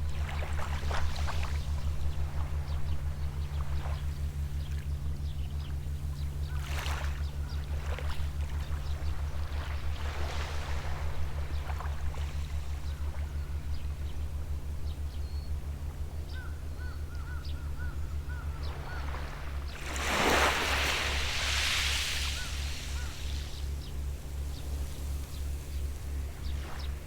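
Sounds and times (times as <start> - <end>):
distant boat engine throbbing: 0.0 - 27.0
bird calling: 14.9 - 21.0, 21.9 - 23.9
wave washing on shore: 19.8 - 23.6.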